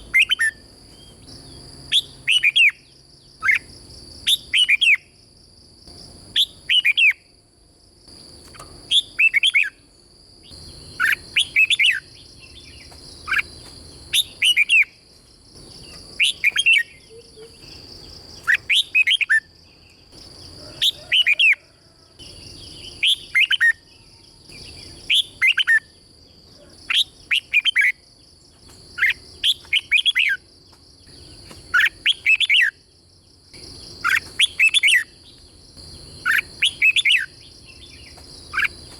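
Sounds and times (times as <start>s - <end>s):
bird singing whistled phrases: 0.1s - 0.6s, 1.9s - 2.8s, 11.0s - 13.5s, 14.2s - 15.0s, 16.2s - 17.7s, 18.4s - 19.5s.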